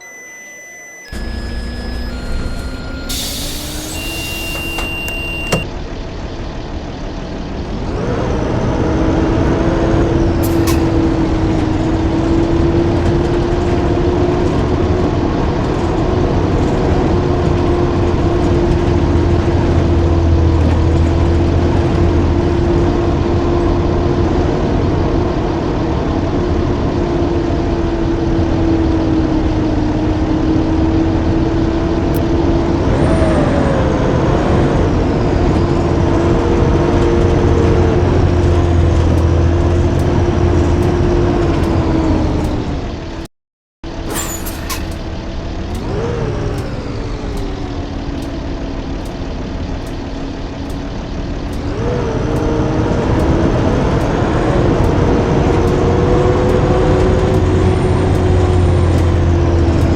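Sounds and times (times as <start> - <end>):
high whistle sliding down: 0.0 - 5.8
bus engine drone with whine: 0.0 - 59.9.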